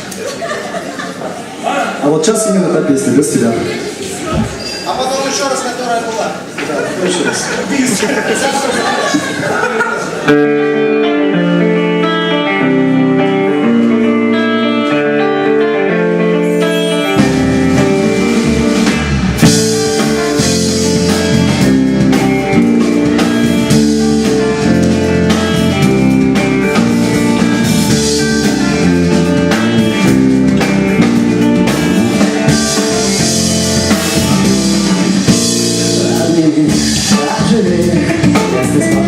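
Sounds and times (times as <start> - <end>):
drums: 3.0 - 4.9, 6.4 - 39.0
guitar: 8.7 - 39.0
bass guitar: 10.2 - 39.0.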